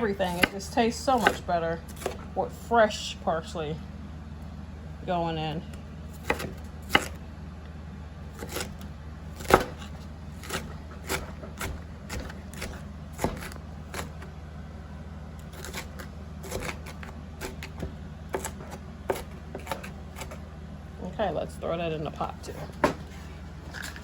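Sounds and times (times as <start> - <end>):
knife chopping on cutting board: 0.2 - 0.6, 1.2 - 2.2, 6.2 - 7.2, 8.4 - 8.8, 9.4 - 14.2, 15.6 - 20.4.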